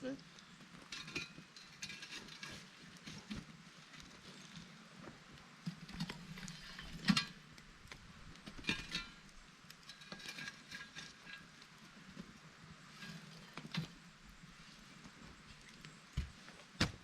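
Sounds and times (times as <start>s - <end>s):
knocks and clinks around camp oven: 0.2s - 4.5s, 5.6s - 14.5s.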